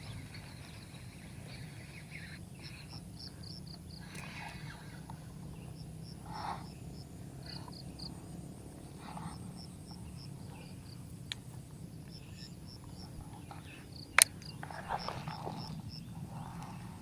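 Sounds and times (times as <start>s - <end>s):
steady low hum: 0.0s - 17.0s
sharp click: 14.1s - 14.8s.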